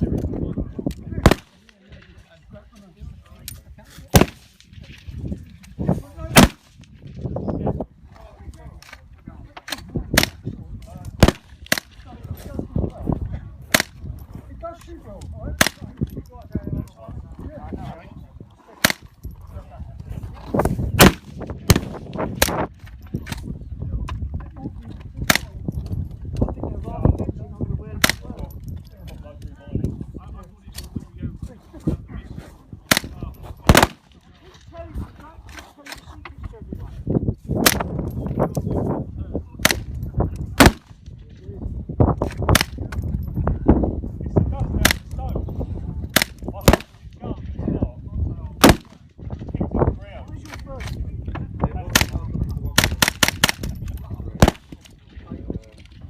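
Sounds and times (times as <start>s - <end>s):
rifle shots: 1.2s - 1.6s, 4.1s - 4.5s, 6.4s - 6.7s, 11.2s - 12.0s, 21.0s - 22.7s, 32.9s - 34.1s, 40.6s - 40.9s, 48.6s - 49.0s, 52.8s - 53.7s, 54.4s - 54.8s.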